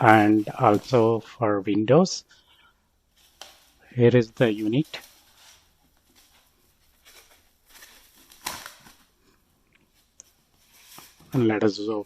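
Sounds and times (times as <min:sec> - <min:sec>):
plastic wrapping rustling: 0:03.0 - 0:11.6.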